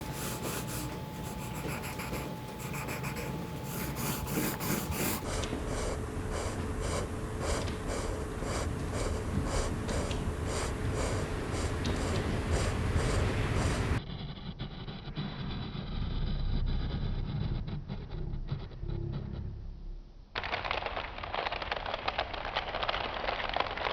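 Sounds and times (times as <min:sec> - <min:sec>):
hand rubbing vinyl sheet: 0:00.0 - 0:05.2.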